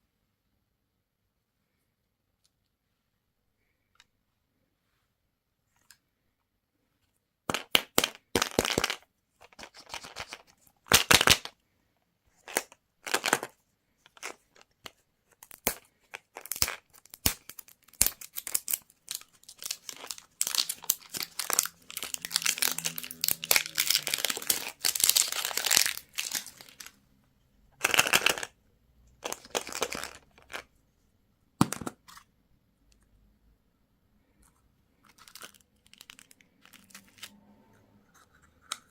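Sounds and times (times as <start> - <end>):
plastic wrapper crinkling: 15.5 - 27.0.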